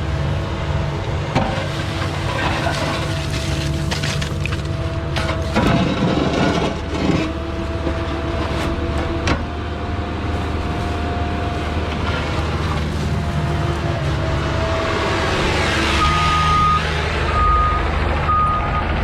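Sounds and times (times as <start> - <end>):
diesel engine running with whine: 0.0 - 19.0
rough scraping and clatter: 1.4 - 16.4.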